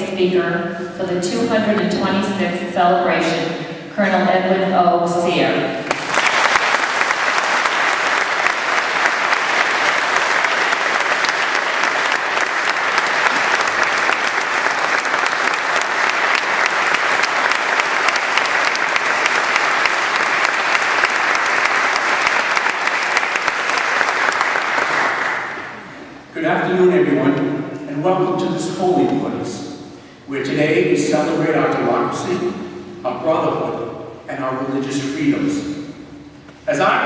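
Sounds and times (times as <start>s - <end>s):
audience applauding: 5.9s - 26.0s.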